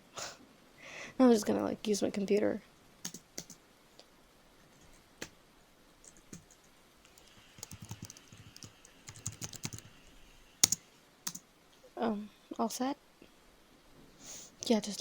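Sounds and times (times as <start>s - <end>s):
typing on computer keyboard: 3.0s - 3.6s, 6.0s - 10.0s, 10.6s - 11.4s.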